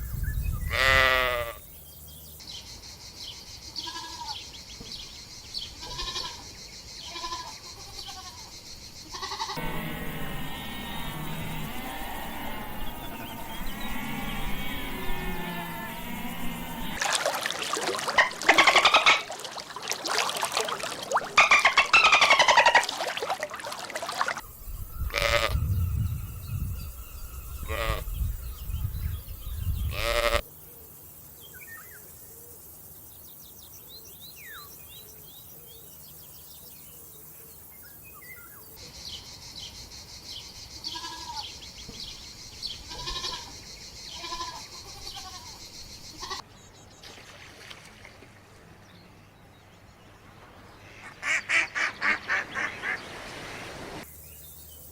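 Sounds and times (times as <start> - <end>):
animals bleating: 0.7 - 1.6, 3.8 - 4.4, 5.8 - 8.5, 9.1 - 10.2, 25.1 - 25.6, 27.6 - 28.0, 29.9 - 30.4, 40.9 - 41.5, 42.9 - 46.4
low rumble: 9.6 - 17.0, 24.6 - 29.9
small birds chirping: 31.1 - 47.1.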